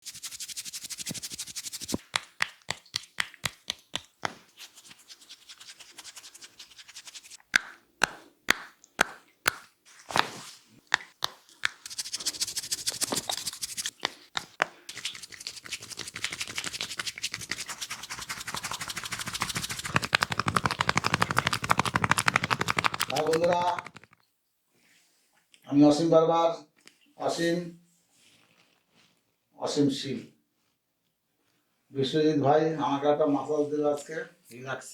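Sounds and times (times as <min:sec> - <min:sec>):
fingers scratching and tapping hair: 0:00.0 - 0:24.2
hands slapping and clapping: 0:00.2 - 0:24.2.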